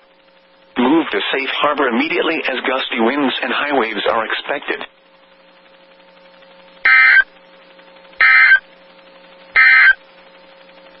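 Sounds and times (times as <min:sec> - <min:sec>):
digital data tone bursts: 0:06.9 - 0:07.3, 0:08.2 - 0:08.6, 0:09.6 - 0:10.0.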